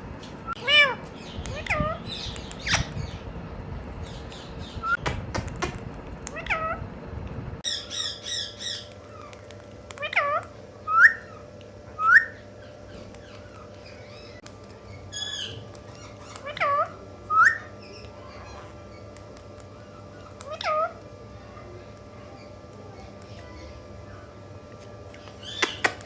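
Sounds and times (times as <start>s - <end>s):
parakeet meow-like calls: 0.5s - 3.2s, 6.3s - 6.8s, 10.0s - 11.4s, 12.0s - 14.4s, 15.1s - 18.9s, 19.9s - 21.0s
parakeet high chirps: 0.5s - 3.3s, 7.6s - 9.3s, 10.0s - 11.4s, 12.0s - 19.0s, 19.8s - 21.0s, 25.2s - 26.0s.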